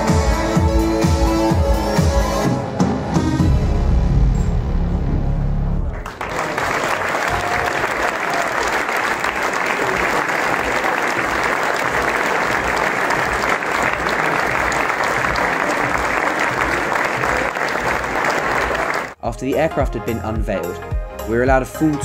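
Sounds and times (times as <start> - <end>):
crowd applauding: 5.9 - 19.2.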